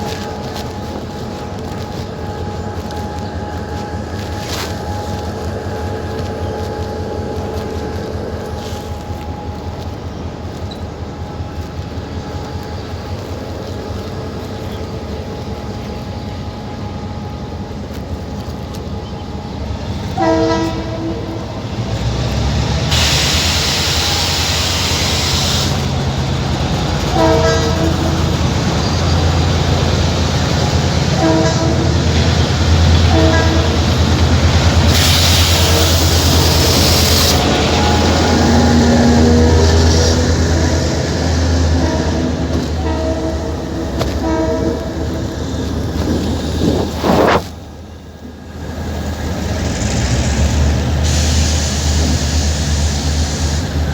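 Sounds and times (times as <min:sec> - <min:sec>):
train engine rumble: 0:00.0 - 0:53.9
train horn blasts: 0:19.6 - 0:47.4
air hiss: 0:22.9 - 0:26.3, 0:34.8 - 0:37.5, 0:51.0 - 0:53.9.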